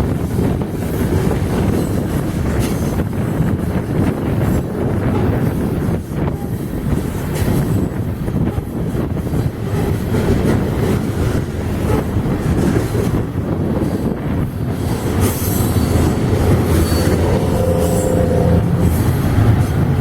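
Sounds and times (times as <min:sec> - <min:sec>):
freight train rumbling past: 0:00.0 - 0:20.0
high wheel squeals: 0:15.4 - 0:19.1.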